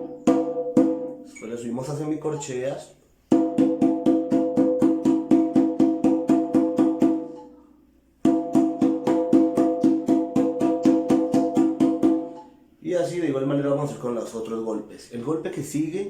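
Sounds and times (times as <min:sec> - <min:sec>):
conga drum open tones: 0:00.0 - 0:13.2.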